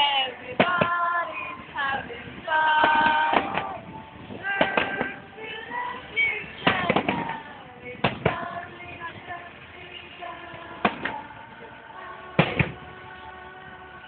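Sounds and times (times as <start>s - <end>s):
fireworks bangs: 0.0s - 9.4s, 10.4s - 11.4s, 12.3s - 13.0s.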